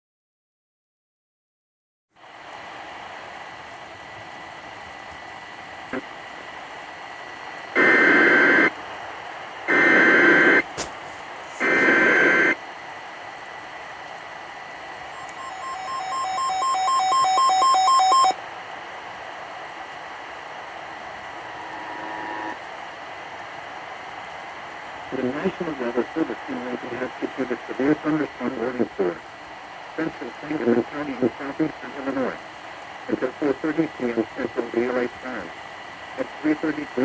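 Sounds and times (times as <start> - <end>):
radio static hiss: 2.2 - 37.0
screechy data bursts: 15.2 - 18.3
two-tone alert beeping: 15.2 - 18.4.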